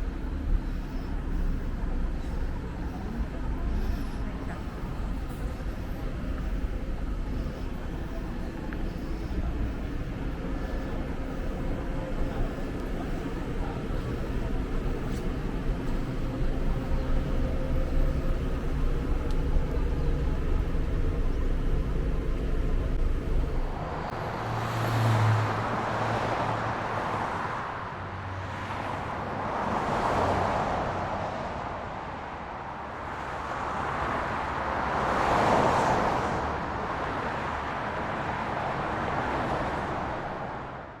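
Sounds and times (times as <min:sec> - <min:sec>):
vehicle engine running low: 0:00.0 - 0:31.2
cars passing: 0:00.0 - 0:41.0.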